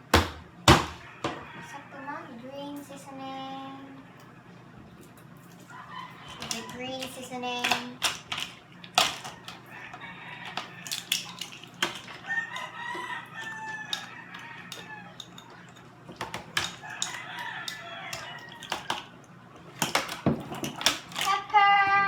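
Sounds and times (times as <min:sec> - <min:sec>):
rooster crowing: 0:00.9 - 0:02.2, 0:05.6 - 0:07.0, 0:09.3 - 0:11.1, 0:12.1 - 0:15.5, 0:16.6 - 0:19.1.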